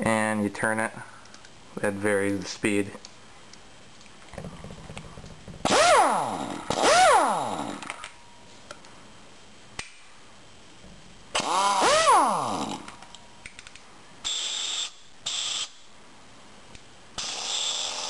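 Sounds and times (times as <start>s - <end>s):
air impact wrench whining: 5.6s - 8.0s, 11.3s - 13.0s, 14.2s - 15.8s, 17.2s - 18.0s.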